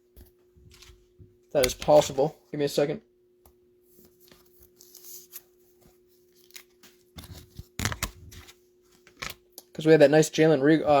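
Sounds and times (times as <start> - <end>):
cards rustling and sliding: 1.6 - 2.3, 4.0 - 9.4.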